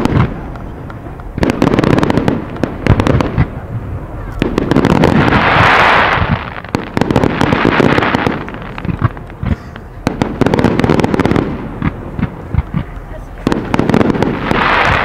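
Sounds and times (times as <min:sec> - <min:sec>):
firework crackle: 0:00.0 - 0:15.0
firework launches and bursts: 0:04.3 - 0:15.0.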